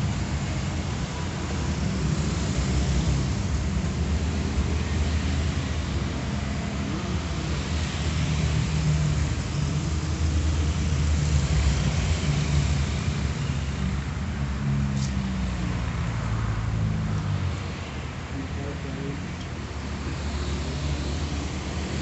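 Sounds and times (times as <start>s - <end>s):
hiss of noise: 14.8s - 15.3s.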